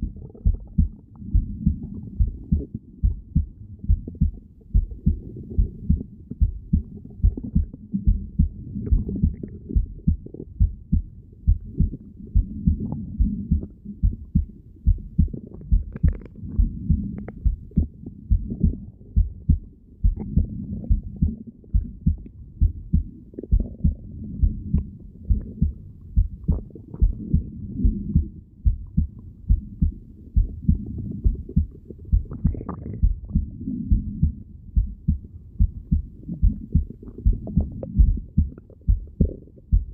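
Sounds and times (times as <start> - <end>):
heartbeat thumps through stethoscope: 0.0 - 39.9
low rumble: 0.0 - 39.9.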